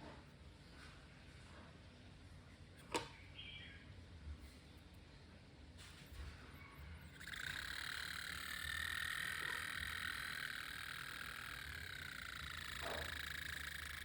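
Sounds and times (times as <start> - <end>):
liquid cooler pump buzzing: 7.0 - 14.0.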